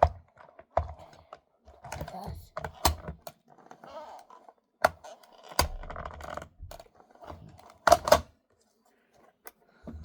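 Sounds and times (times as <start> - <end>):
plastic clicks and knocks: 0.0 - 3.9, 4.8 - 8.3.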